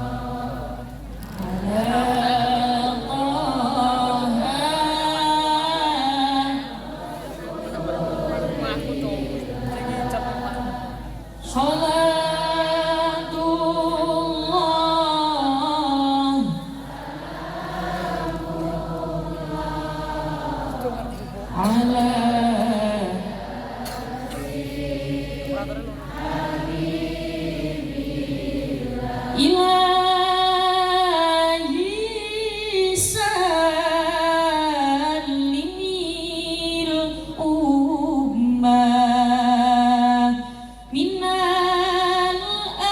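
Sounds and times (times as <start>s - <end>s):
congregation singing in chorus: 0.0s - 31.6s
woman singing unaccompanied: 1.3s - 7.0s, 11.4s - 16.8s, 21.5s - 23.5s, 29.3s - 42.9s.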